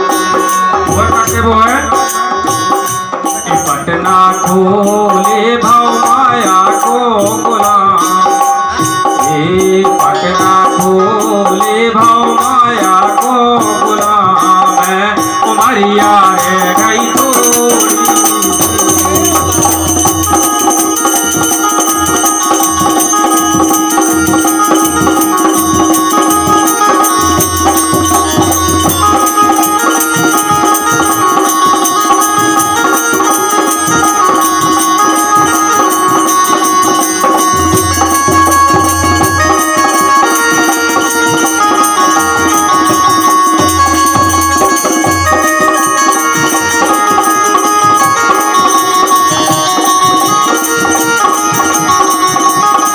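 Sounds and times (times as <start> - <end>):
hand drums: 0.0 - 52.9
jingling percussion: 0.0 - 52.9
held drone note: 16.3 - 52.9.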